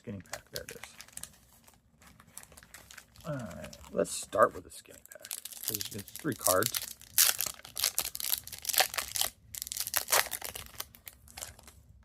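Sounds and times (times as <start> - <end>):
wrapper torn open and crinkled: 0.2 - 4.0, 5.0 - 11.8.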